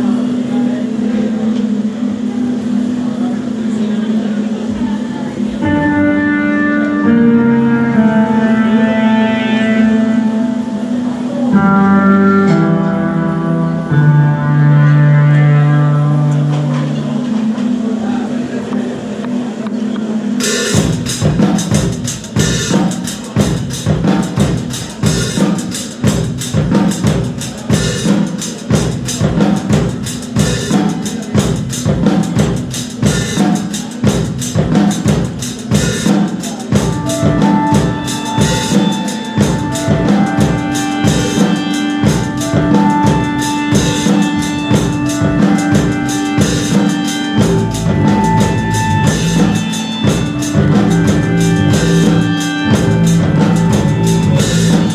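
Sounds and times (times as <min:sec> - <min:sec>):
held melodic notes: 0:00.0 - 0:54.9
live rock band playing: 0:05.6 - 0:18.0, 0:20.3 - 0:54.9
bass drum and snare beat: 0:20.7 - 0:54.9.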